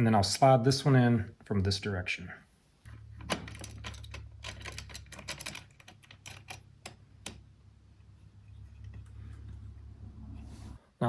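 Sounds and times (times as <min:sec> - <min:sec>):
metal hardware clicking: 0:03.2 - 0:07.4.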